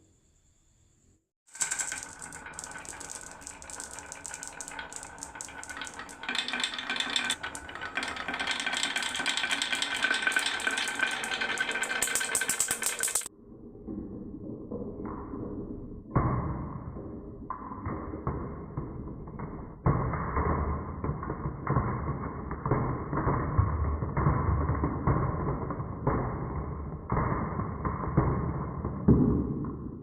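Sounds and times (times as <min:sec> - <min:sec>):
marbles rattling down wooden run: 0:01.5 - 0:13.3.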